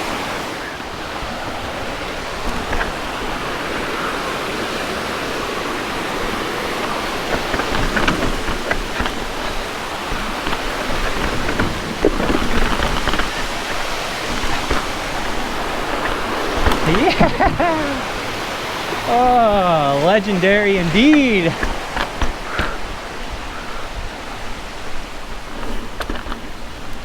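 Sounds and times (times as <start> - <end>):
waterfall rushing: 0.0 - 8.8, 13.3 - 25.4
bike rattling over rock: 0.6 - 27.0.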